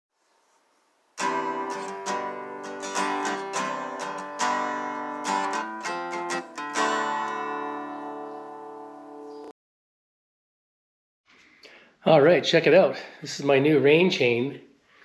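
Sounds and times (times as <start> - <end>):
acoustic guitar strumming: 1.2 - 9.5.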